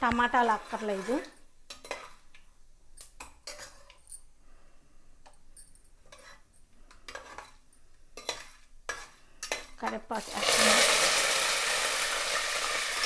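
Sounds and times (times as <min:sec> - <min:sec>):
metal spoon clinking on pot: 0:08.2 - 0:09.8.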